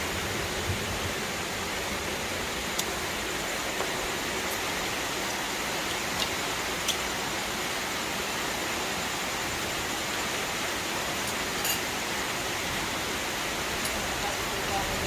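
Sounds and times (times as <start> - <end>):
steady hiss: 0.0 - 15.0
light clink: 11.2 - 11.9.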